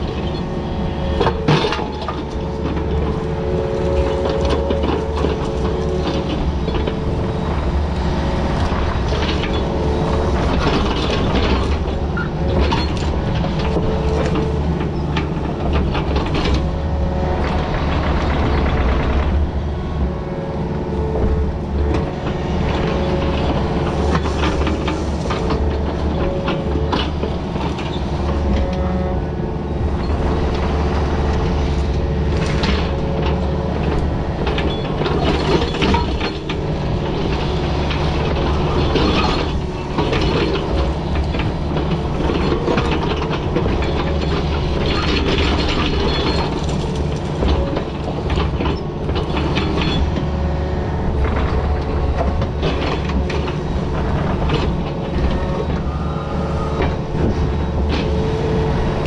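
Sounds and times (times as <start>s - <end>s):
bucket scraping and clanking on rock: 0.0s - 17.2s, 22.0s - 29.2s, 32.5s - 50.4s
excavator diesel engine running: 0.0s - 59.0s.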